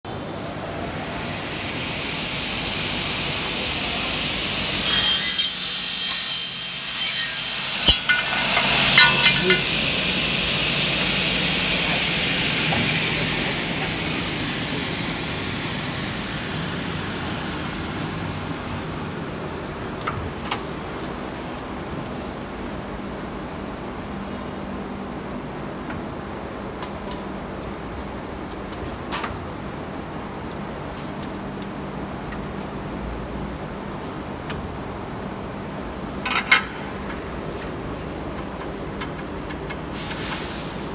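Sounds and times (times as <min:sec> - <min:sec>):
cutting saw running: 0:01.5 - 0:14.3
saw screeching through metal: 0:04.4 - 0:11.3.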